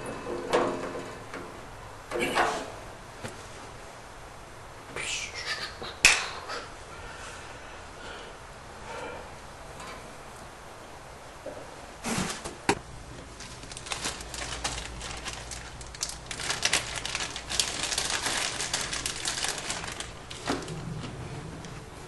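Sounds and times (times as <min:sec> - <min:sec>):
rustling and scraping of parts: 0:00.0 - 0:03.8, 0:11.4 - 0:22.0.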